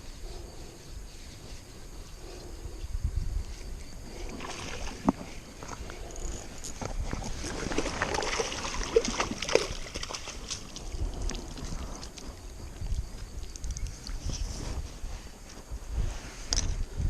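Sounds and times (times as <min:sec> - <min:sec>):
water sloshing around a kayak: 0:04.0 - 0:15.0.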